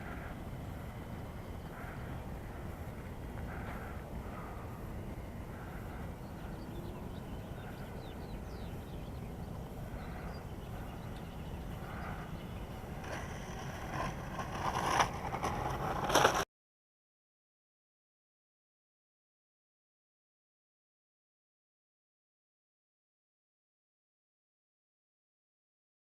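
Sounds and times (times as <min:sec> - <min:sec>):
low wind rumble: 0:00.0 - 0:16.4.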